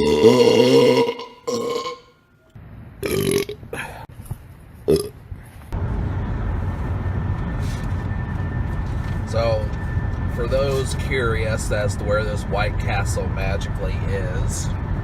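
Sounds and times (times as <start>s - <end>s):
man burping: 0.0s - 2.2s, 3.0s - 4.1s, 4.9s - 5.1s
car engine rumble: 3.6s - 15.0s.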